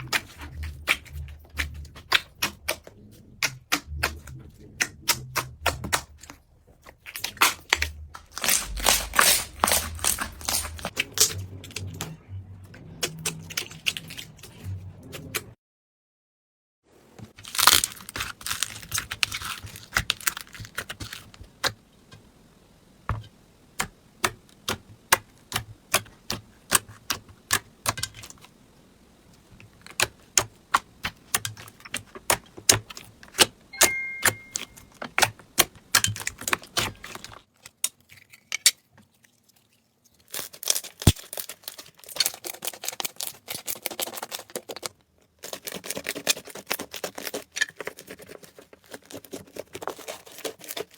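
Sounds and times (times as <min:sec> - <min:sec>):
slime crackling and popping: 0:00.0 - 0:12.1, 0:17.3 - 0:21.8, 0:29.3 - 0:38.8, 0:40.1 - 0:50.9.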